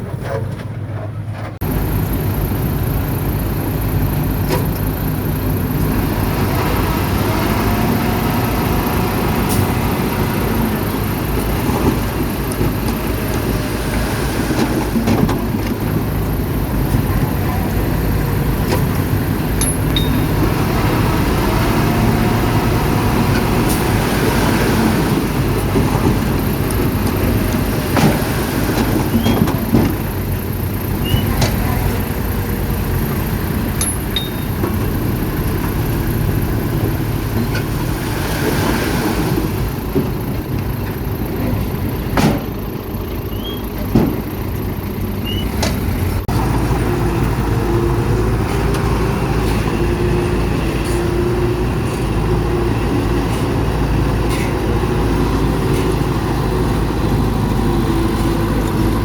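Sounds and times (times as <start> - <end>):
bulldozer diesel engine running: 0.0 - 59.0
steady whine: 1.6 - 24.0
sharp metal clanks: 18.7 - 20.4, 33.8 - 34.8.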